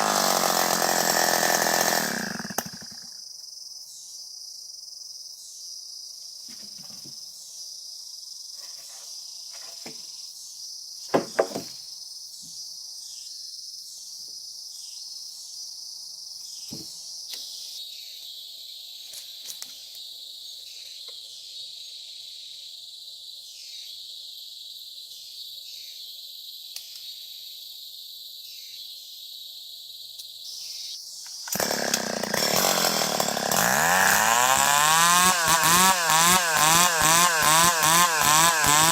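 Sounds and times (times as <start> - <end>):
chainsaw revving: 0.0 - 3.1, 31.5 - 38.9
high-pitched insect chorus: 2.2 - 33.4
sharp knocks: 11.1 - 11.7.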